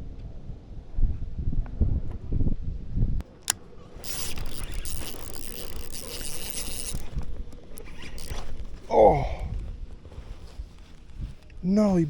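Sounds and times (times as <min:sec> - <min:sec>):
sharp click: 0:03.2 - 0:08.9
fishing reel drag buzzing: 0:03.3 - 0:09.4.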